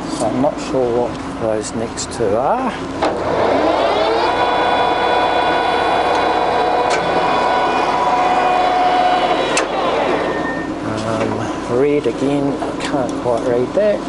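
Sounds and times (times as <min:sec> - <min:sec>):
lathe running with gear whine: 0:03.0 - 0:10.9.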